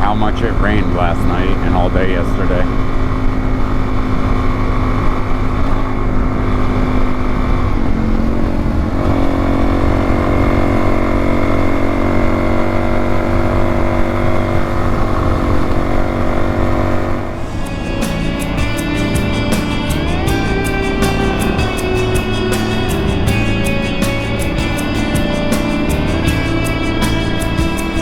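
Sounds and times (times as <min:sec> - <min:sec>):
music: 0:00.0 - 0:02.7, 0:17.4 - 0:28.0
motorcycle engine running: 0:00.0 - 0:28.0.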